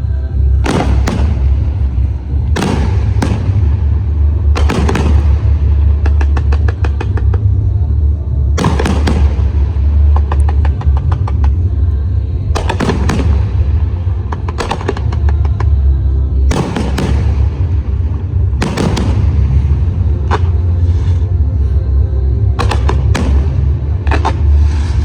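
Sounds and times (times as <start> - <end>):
low rumble: 0.0 - 25.0
firework shells bursting: 4.6 - 7.4, 12.6 - 15.7, 16.5 - 21.1.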